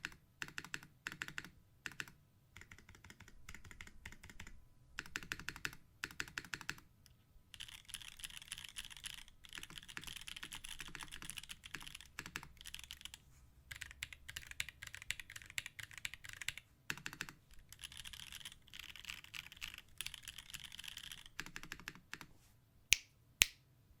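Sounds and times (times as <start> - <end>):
mechanical keyboard typing: 0.0 - 6.8, 7.6 - 22.3.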